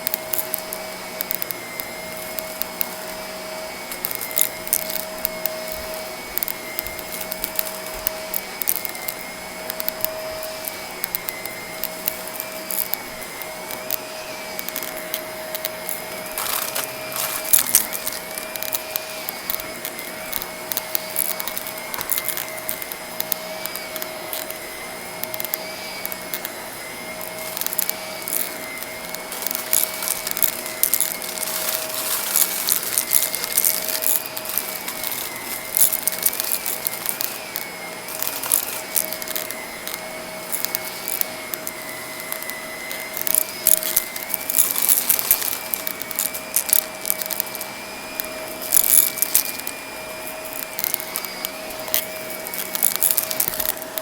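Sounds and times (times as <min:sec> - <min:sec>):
vacuum cleaner motor whine: 0:00.0 - 0:54.0.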